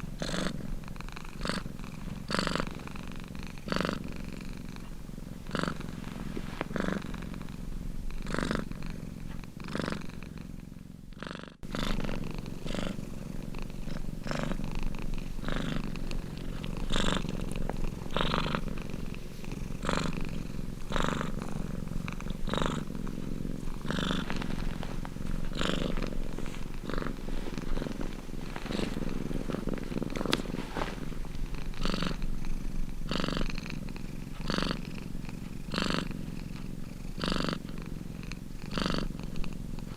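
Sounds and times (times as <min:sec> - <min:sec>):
cat purring: 0:00.0 - 0:39.9.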